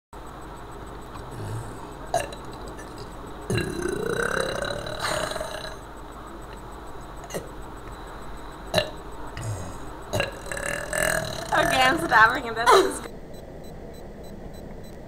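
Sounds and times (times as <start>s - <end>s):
boy burping: 1.3s - 5.8s, 8.7s - 12.1s.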